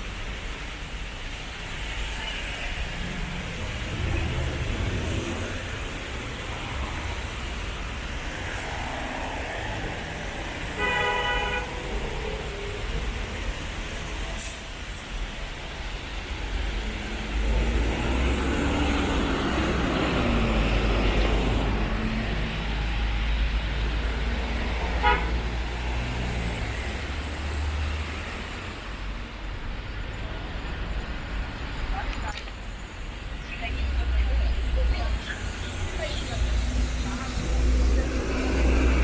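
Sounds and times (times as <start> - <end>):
heavy vehicle rumble: 0.0 - 39.0
road traffic passing: 0.0 - 39.0.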